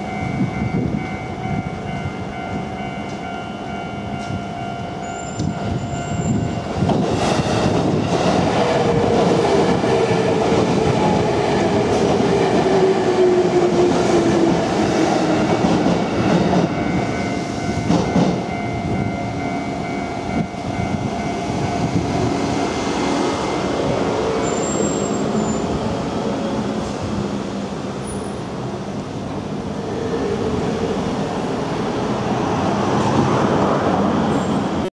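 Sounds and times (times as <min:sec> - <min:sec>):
level crossing warning bell: 0:00.0 - 0:06.9, 0:16.0 - 0:23.7.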